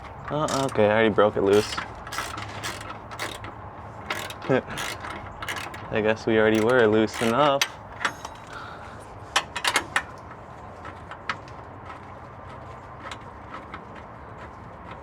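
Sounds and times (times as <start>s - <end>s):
ratcheting wrench clicks: 0.0s - 0.9s, 1.5s - 3.5s, 4.1s - 8.7s.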